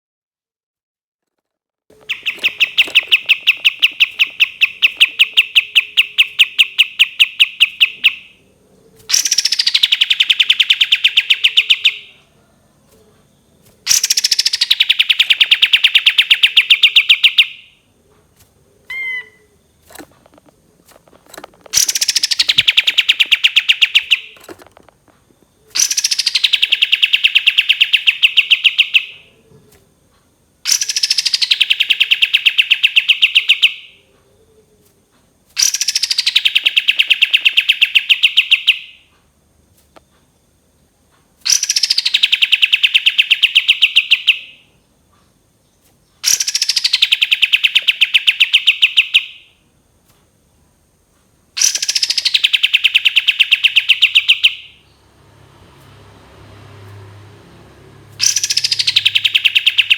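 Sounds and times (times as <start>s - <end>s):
bird singing rapid sharp notes: 2.0s - 8.4s, 9.0s - 12.1s, 13.9s - 17.8s, 21.7s - 24.5s, 25.6s - 29.2s, 30.7s - 33.9s, 35.6s - 39.0s, 41.5s - 44.6s, 46.2s - 49.4s, 51.6s - 55.2s, 58.1s - 59.9s.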